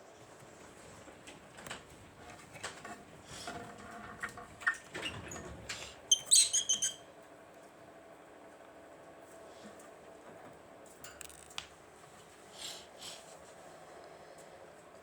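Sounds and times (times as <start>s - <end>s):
parrot chirping: 6.1s - 7.0s.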